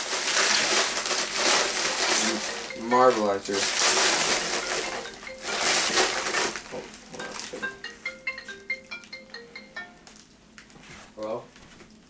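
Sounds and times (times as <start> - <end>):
rustling handling noise: 0.0 - 12.0
marimba phone ringtone: 1.7 - 10.2.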